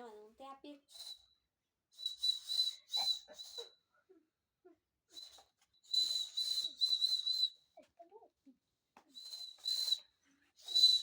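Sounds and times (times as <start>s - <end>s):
whistle blasts: 2.0s - 3.7s, 5.2s - 7.6s, 9.2s - 10.0s.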